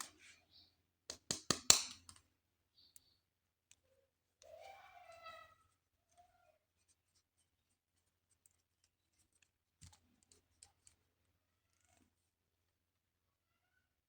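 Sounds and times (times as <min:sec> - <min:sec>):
faint small clicks and taps: 0:01.1 - 0:04.5, 0:06.1 - 0:12.2.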